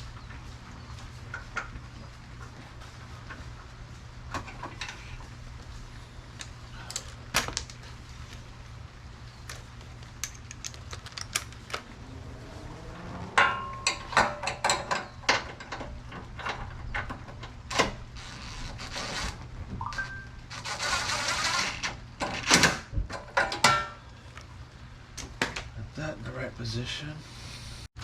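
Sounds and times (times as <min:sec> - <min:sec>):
low hum: 0:00.0 - 0:21.1.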